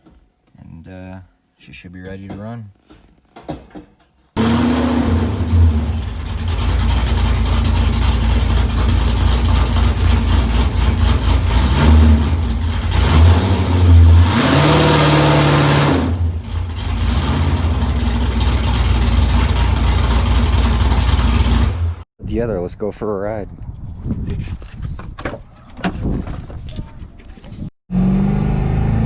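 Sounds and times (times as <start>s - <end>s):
car engine revving: 4.4s - 22.0s.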